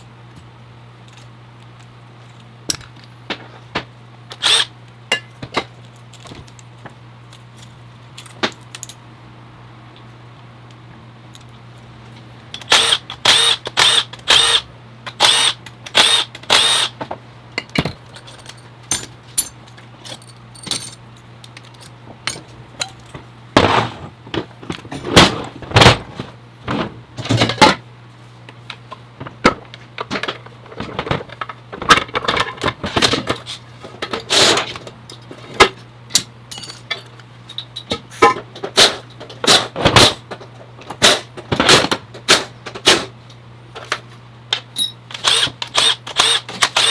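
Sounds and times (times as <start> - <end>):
steady low hum: 0.0 - 46.2
metal parts and tools clanking: 17.6 - 23.2, 36.2 - 39.4, 44.7 - 45.2.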